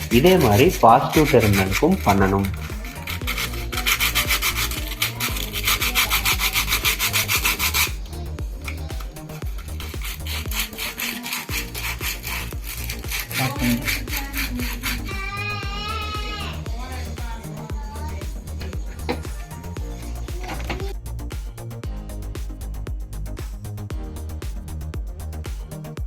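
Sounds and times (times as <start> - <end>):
sandpaper rasping on metal: 0.0 - 8.0, 8.7 - 15.2.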